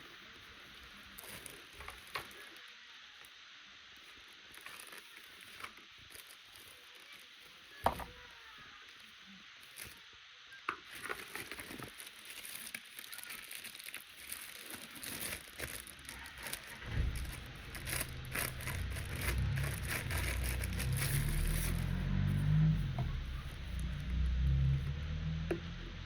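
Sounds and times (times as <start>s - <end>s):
plastic clicks and rustling: 1.2s - 2.6s, 4.5s - 7.3s, 10.7s - 21.9s.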